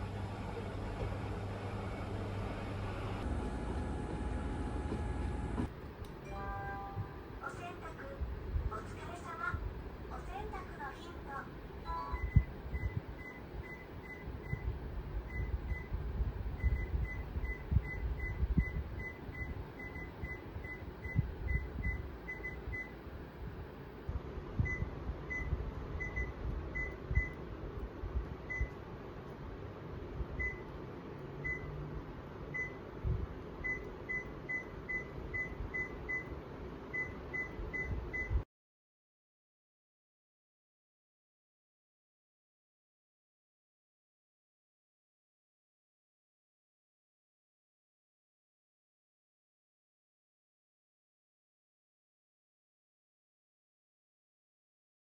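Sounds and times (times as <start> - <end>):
control panel beeps: 12.0 - 14.7, 16.6 - 23.0, 24.6 - 27.4, 28.5 - 28.8, 31.4 - 31.7, 33.6 - 36.3, 37.0 - 38.4.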